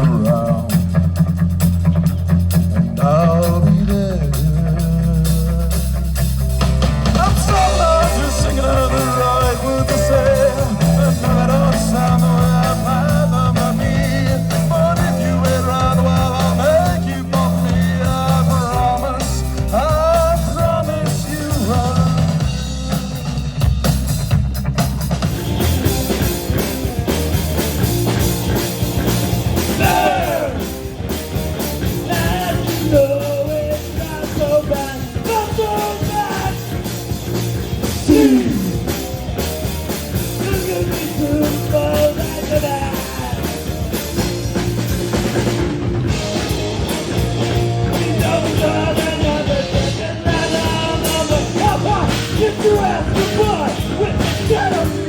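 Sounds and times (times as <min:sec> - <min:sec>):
rock band playing live: 0:00.0 - 0:55.0
sliding lead guitar melody: 0:01.9 - 0:23.7.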